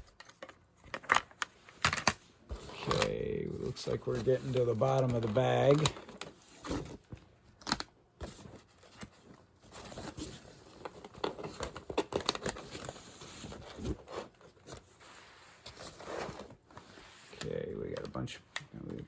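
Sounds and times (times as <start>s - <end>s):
plastic crinkling: 0.0s - 6.9s
hands rummaging in card bag: 0.0s - 7.1s.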